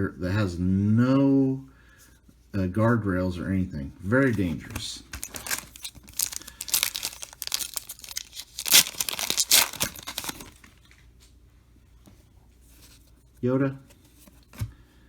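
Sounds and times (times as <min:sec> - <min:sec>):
foil wrapper tearing and crinkling: 0:05.2 - 0:10.8.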